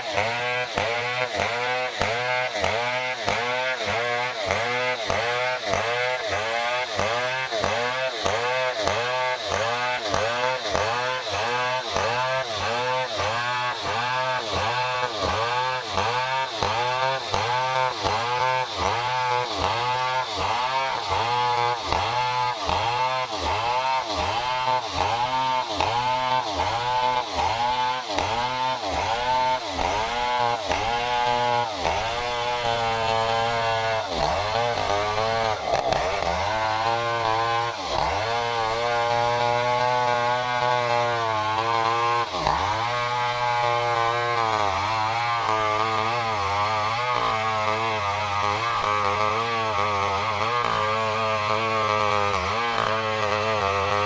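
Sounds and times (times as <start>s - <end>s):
chainsaw cutting wood: 0.0s - 54.0s.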